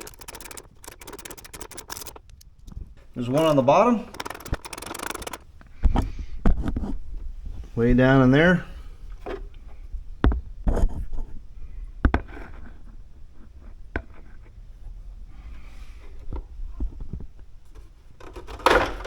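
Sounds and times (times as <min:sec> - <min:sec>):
hand tools knocking and clicking: 0:03.2 - 0:06.1.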